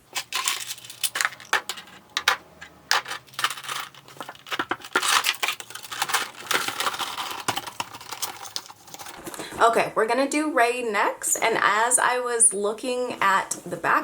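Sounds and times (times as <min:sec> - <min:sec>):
packaging crinkling: 0:00.0 - 0:09.5.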